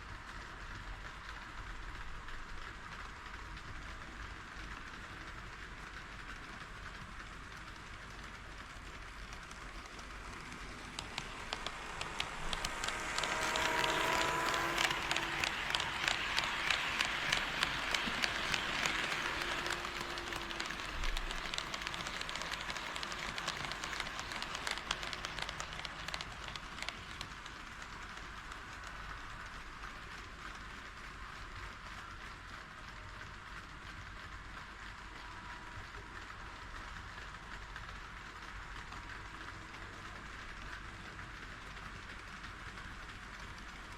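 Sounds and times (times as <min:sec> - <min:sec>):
model train running: 0:00.0 - 0:43.9
wheels clicking over rail joints: 0:02.0 - 0:31.2.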